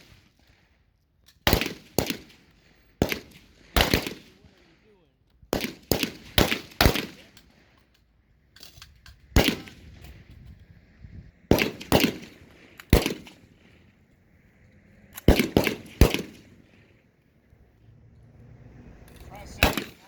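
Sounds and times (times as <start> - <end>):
rifle shots with echo: 1.4 - 4.8, 5.5 - 7.7, 9.3 - 10.2, 11.4 - 13.9, 15.2 - 17.0, 19.4 - 20.0.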